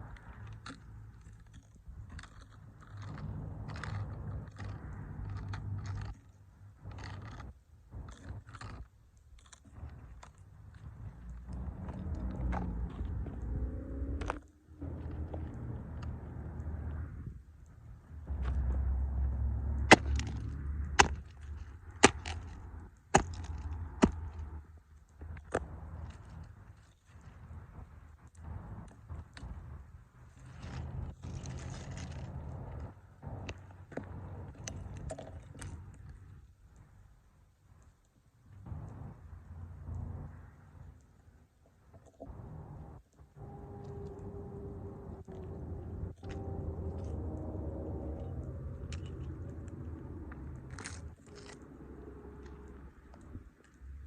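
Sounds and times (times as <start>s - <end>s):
toy cars crunching under boots: 0.0s - 36.6s, 42.1s - 54.0s
low rumble: 9.4s - 36.4s, 42.2s - 54.0s.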